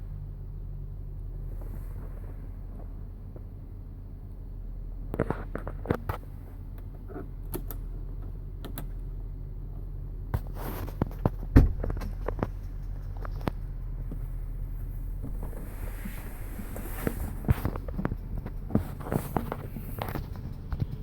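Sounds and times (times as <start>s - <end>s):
car engine idling: 0.0s - 21.0s
sharp clicks and knocks: 5.1s - 9.0s, 10.4s - 14.3s, 17.0s - 21.0s.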